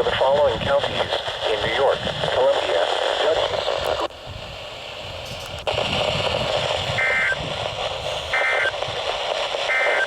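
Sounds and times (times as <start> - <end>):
radio hiss: 0.0 - 10.0
short bursts of data tones: 6.9 - 7.4, 8.3 - 8.9, 9.6 - 10.0.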